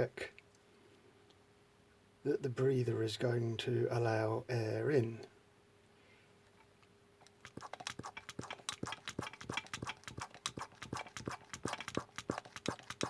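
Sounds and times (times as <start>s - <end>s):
hand vacuum pump clicking: 7.3s - 13.0s.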